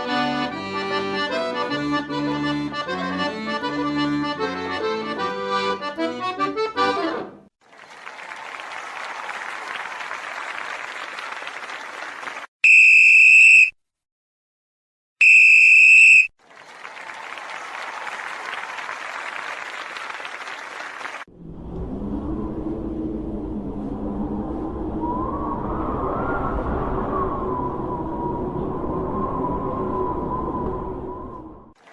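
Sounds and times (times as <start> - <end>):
applause: 7.6 - 12.5, 16.4 - 21.3
steady low hum: 21.3 - 26.0
low rumbling: 21.3 - 31.8.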